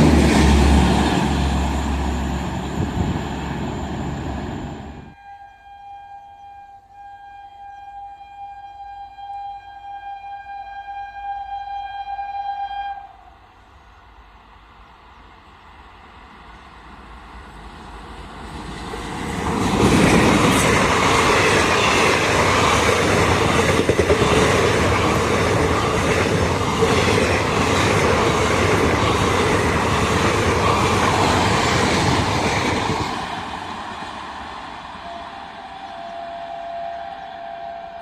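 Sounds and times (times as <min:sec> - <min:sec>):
train wheels clattering on rails: 0:18.6 - 0:35.0.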